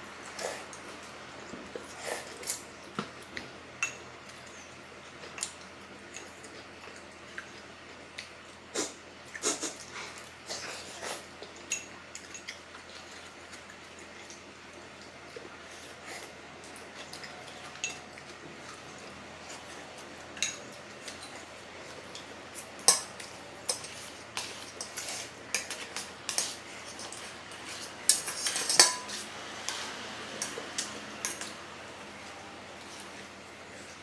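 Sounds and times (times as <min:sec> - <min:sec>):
utensils clinking against bowl: 0:17.4 - 0:18.8, 0:20.4 - 0:31.6.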